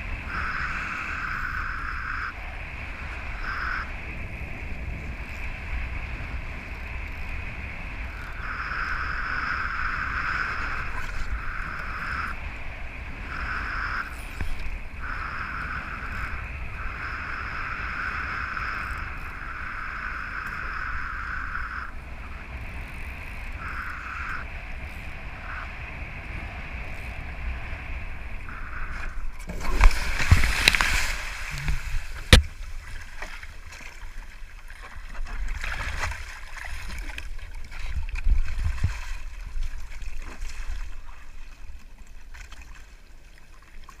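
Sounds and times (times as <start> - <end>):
wind buffeting microphone: 0.0 - 33.4
water rushing past boat: 21.9 - 44.0
loud splashing surge: 29.5 - 32.5.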